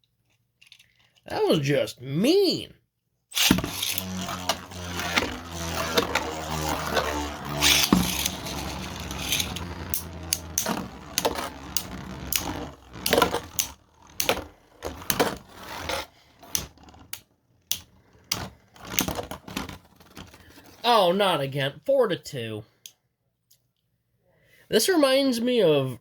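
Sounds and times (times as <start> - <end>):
plastic spinning tops clicking: 3.4 - 20.6.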